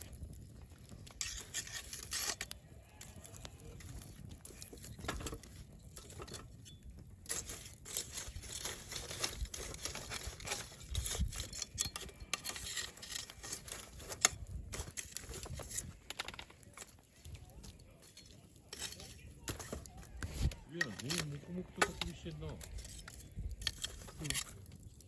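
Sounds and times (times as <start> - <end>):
campfire crackling and popping: 0.0 - 25.0.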